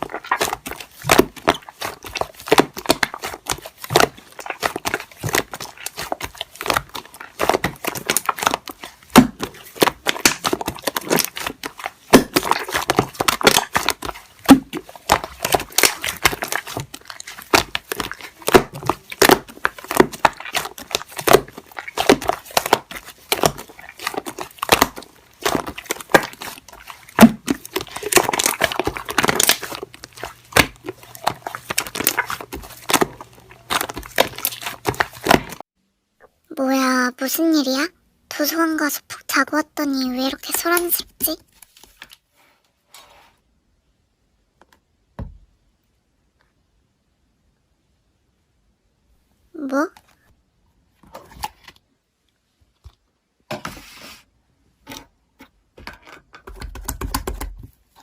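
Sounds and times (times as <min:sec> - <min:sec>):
slime squeezed by hand: 0:00.0 - 0:35.6.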